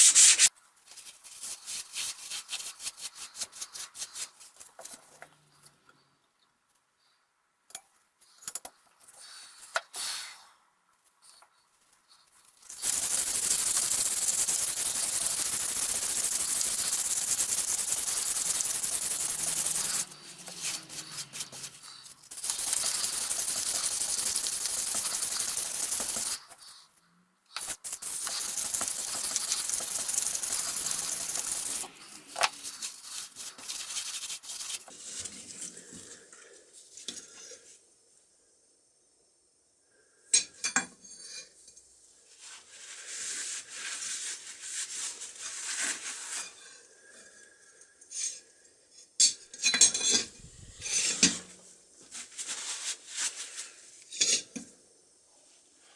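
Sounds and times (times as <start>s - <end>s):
harsh abrasive hiss on steel: 9.2s - 10.5s, 12.5s - 35.0s.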